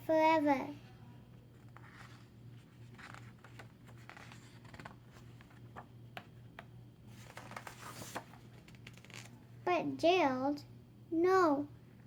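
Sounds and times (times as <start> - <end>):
steady low hum: 0.0 - 12.0
book pages turning: 1.6 - 9.4.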